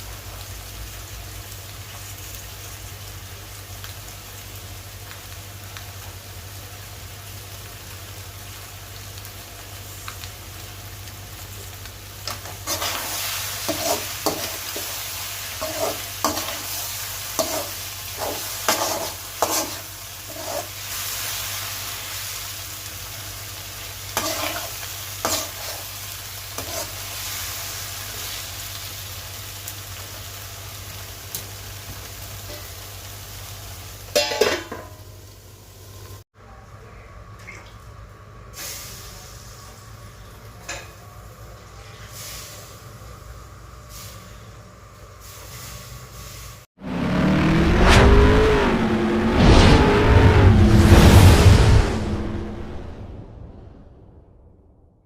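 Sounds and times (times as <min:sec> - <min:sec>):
meat sizzling in a pan: 0:00.0 - 0:36.1
utensil scraping a pan: 0:12.3 - 0:15.0, 0:15.6 - 0:20.8, 0:24.2 - 0:25.8, 0:26.6 - 0:27.0.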